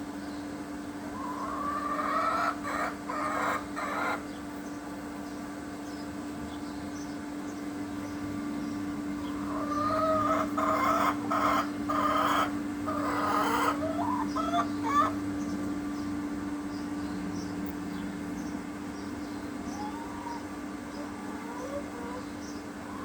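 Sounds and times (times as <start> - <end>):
chicken calling: 1.0 - 4.4, 9.1 - 15.4, 19.6 - 23.0
chicken clucking: 1.1 - 4.2, 9.2 - 15.2, 19.8 - 23.0.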